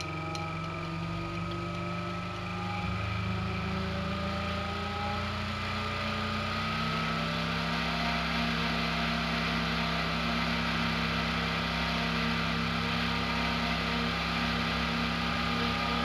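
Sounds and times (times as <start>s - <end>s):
pc case fan humming: 0.0s - 16.0s.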